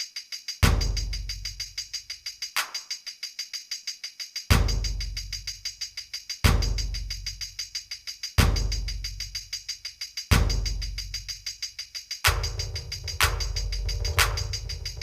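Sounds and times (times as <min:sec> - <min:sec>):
tambourine-like shaker rhythm: 0:00.0 - 0:15.0.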